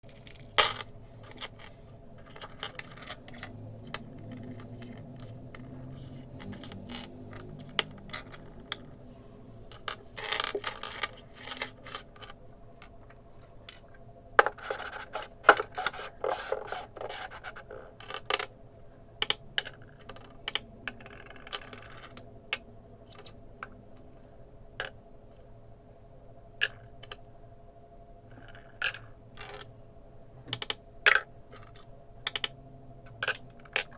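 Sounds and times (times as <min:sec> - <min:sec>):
small hard toy clicks and taps: 0:00.1 - 0:09.0, 0:30.5 - 0:33.9
toy pieces clattering and scraping: 0:00.1 - 0:18.5, 0:30.5 - 0:33.9.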